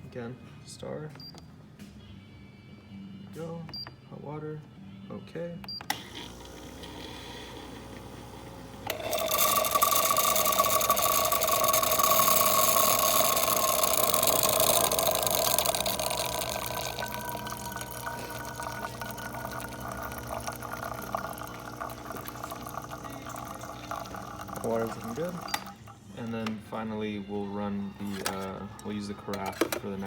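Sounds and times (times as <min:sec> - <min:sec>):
espresso machine pump humming: 0:05.9 - 0:26.0
water pouring from spout: 0:08.9 - 0:26.0.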